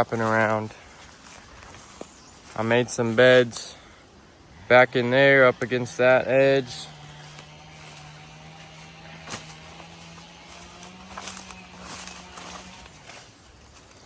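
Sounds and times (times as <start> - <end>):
footsteps through dead leaves: 0.0 - 4.1, 5.0 - 14.0
twigs cracking: 0.0 - 4.1, 5.4 - 14.0
steady low hum: 0.0 - 14.0.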